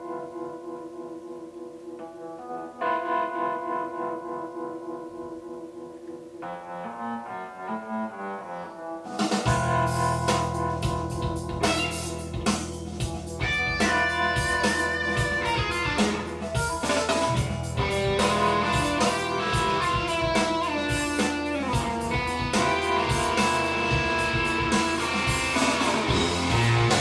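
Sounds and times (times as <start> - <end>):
music with electric guitar and drums: 9.1 - 27.0.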